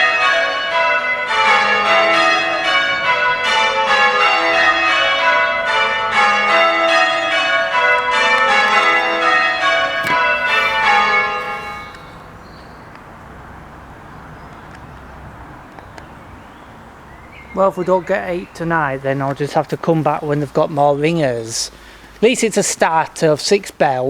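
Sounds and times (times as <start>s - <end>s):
church bells ringing: 0.0s - 12.8s, 17.3s - 22.5s
faint outdoor background: 0.0s - 24.0s.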